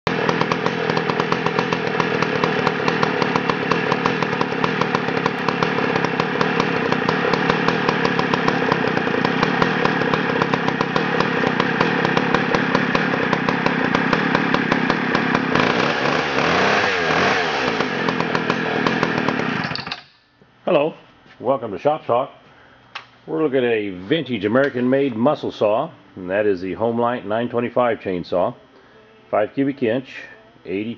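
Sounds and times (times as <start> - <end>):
chainsaw engine running and revving: 0.1 - 19.9.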